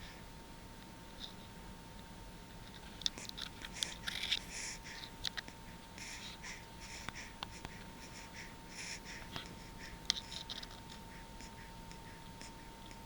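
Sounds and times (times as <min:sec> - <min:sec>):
breathing: 0:00.0 - 0:00.3, 0:03.2 - 0:13.0.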